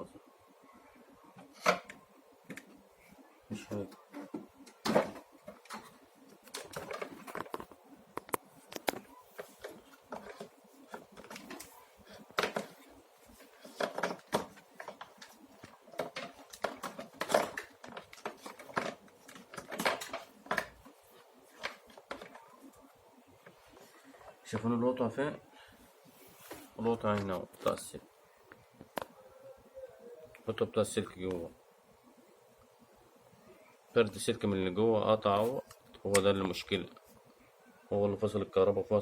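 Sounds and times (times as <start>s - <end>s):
plastic parts clicking and rattling: 3.7s - 22.8s.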